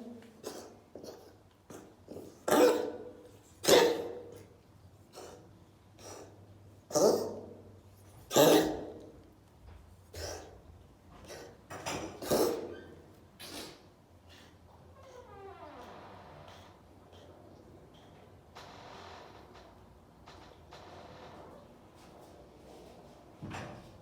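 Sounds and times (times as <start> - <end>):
person coughing: 2.5 - 4.3, 8.3 - 9.0.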